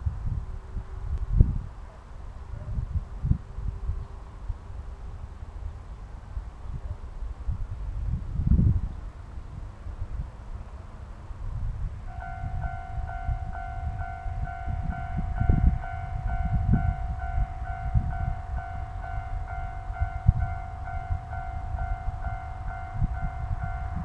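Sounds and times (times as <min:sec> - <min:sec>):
level-crossing warning bell: 0:12.1 - 0:24.0.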